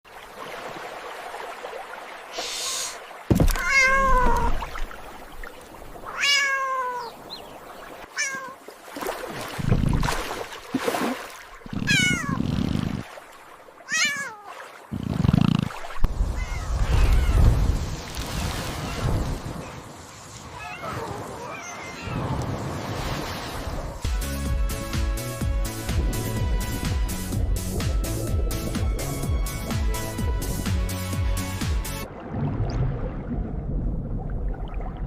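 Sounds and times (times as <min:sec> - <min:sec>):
cat meowing: 0:03.5 - 0:04.6, 0:06.1 - 0:07.2, 0:08.2 - 0:08.6, 0:11.8 - 0:12.4, 0:13.9 - 0:14.5, 0:16.3 - 0:17.5, 0:20.6 - 0:22.3.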